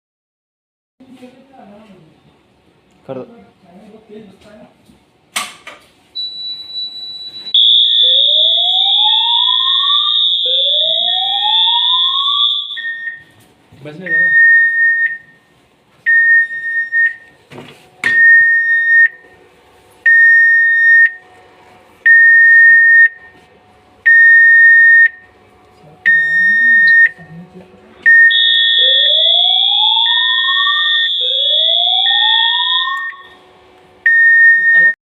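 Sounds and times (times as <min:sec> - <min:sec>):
shrill alarm sounder: 0:06.2 - 0:13.4, 0:18.0 - 0:25.4, 0:26.0 - 0:27.3, 0:28.0 - 0:35.0
fire alarm beeping: 0:06.2 - 0:17.4, 0:18.0 - 0:21.4, 0:22.0 - 0:25.4, 0:26.0 - 0:27.3, 0:28.0 - 0:35.0.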